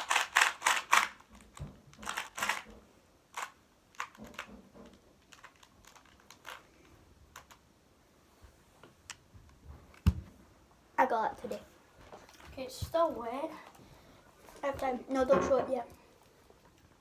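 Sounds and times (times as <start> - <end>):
plastic cube layers clicking: 0.0 - 2.7, 3.3 - 7.7.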